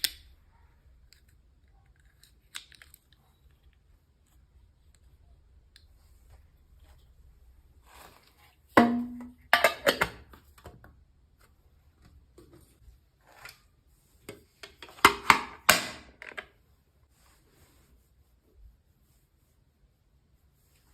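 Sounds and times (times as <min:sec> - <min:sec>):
toy parts clacking: 0:01.1 - 0:03.8.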